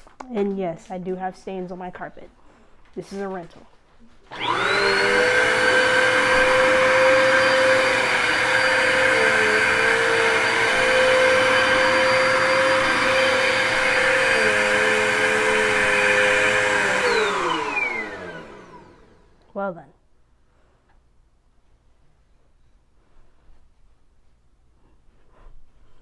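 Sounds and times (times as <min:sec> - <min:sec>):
vacuum cleaner motor running: 0:04.3 - 0:19.5.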